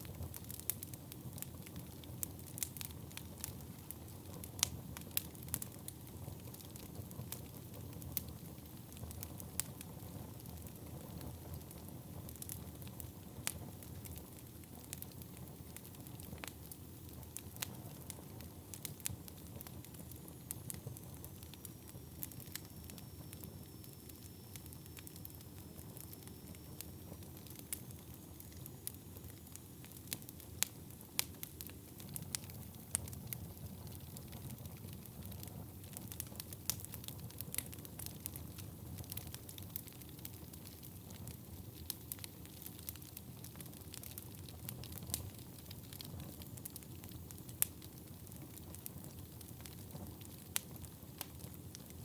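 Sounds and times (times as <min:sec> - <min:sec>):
rumble of flames: 0:00.0 - 0:52.0
logs crackling and popping: 0:12.3 - 0:22.6, 0:24.6 - 0:52.0.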